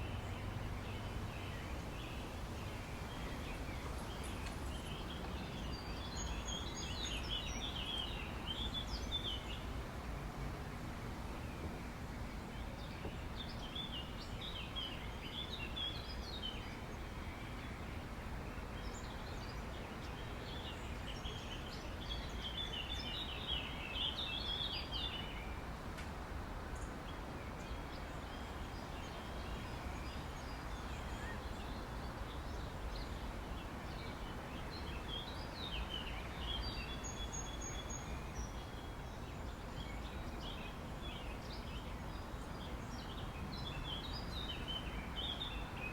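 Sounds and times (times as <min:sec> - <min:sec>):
birds chirping: 0:00.0 - 0:09.7.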